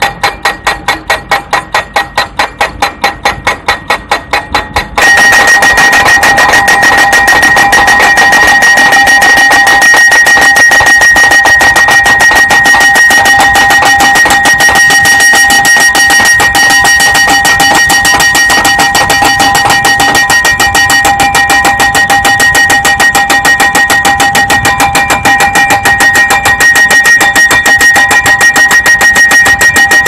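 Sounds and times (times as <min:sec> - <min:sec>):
impact hammer striking steel pile: 0:00.0 - 0:30.0
metal ringing: 0:00.0 - 0:30.0.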